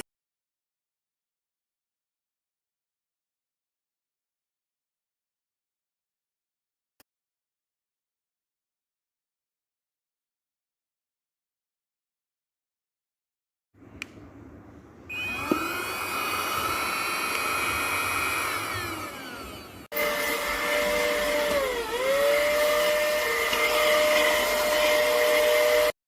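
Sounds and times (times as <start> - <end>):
handheld vacuum cleaner whining: 15.1 - 26.0.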